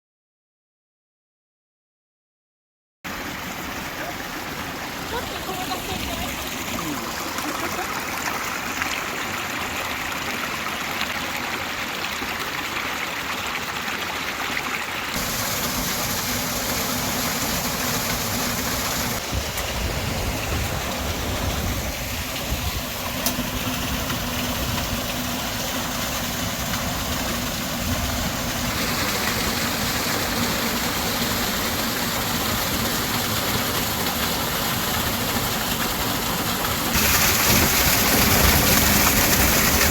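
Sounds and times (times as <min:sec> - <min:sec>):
waterfall rushing water: 0:03.1 - 0:39.9
deep water rumble: 0:15.2 - 0:39.9.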